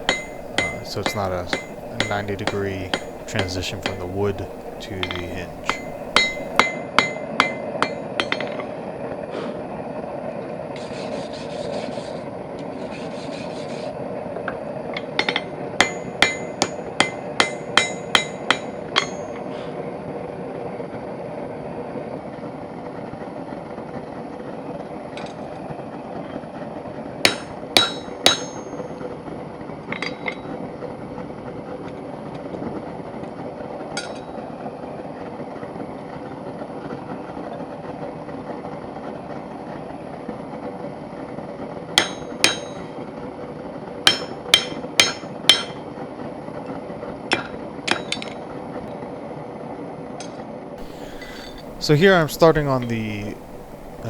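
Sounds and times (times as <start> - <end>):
light hammer taps: 0.0 - 6.6, 50.8 - 51.8
steady background drone: 0.0 - 6.6, 50.8 - 54.0
hammer striking steel on anvil: 0.0 - 7.5, 17.4 - 18.4, 44.1 - 45.7, 50.8 - 54.0.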